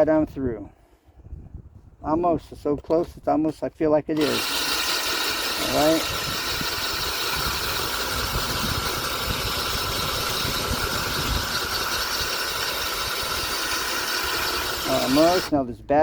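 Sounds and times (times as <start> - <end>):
drill grinding through stone: 4.2 - 15.6.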